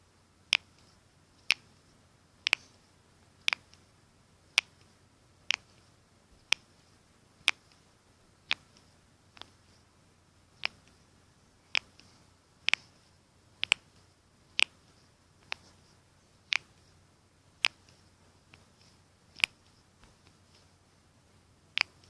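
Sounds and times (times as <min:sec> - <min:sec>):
knuckles cracking: 0:08.5 - 0:09.6, 0:10.6 - 0:11.0, 0:21.7 - 0:22.0.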